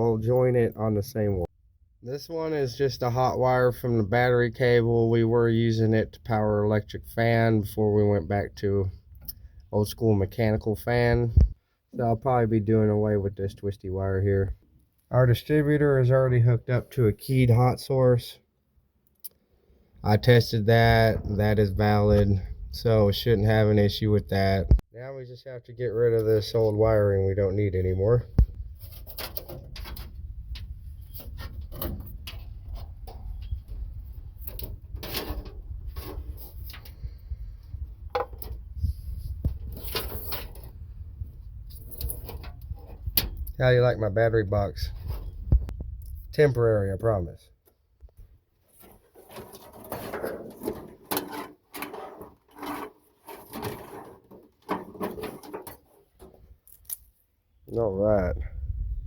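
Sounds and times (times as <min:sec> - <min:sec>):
wiring rubbing and scraping: 0:27.6 - 0:46.4, 0:48.6 - 0:57.0.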